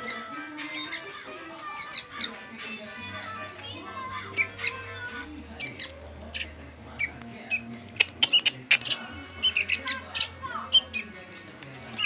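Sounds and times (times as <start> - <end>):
chicks chirping: 0.0 - 12.0
sharp clicks: 8.0 - 8.9.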